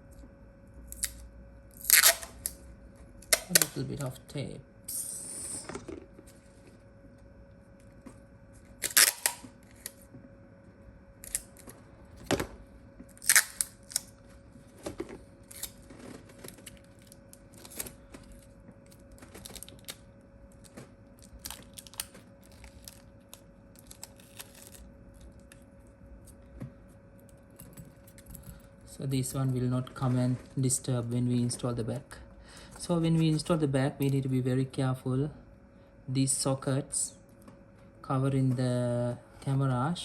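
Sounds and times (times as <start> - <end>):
faint steady hum: 0.0 - 40.0
adhesive tape crackling: 1.8 - 2.6, 3.2 - 4.1, 8.7 - 10.0, 11.2 - 11.7, 13.1 - 14.2, 15.4 - 25.6.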